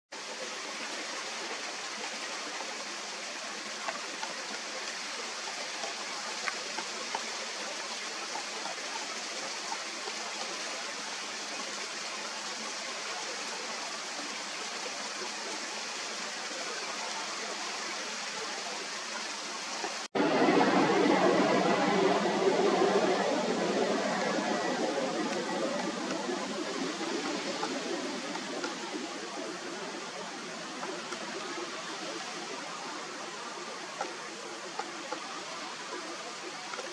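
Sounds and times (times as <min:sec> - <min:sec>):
steady rushing noise: 0:19.4 - 0:36.9.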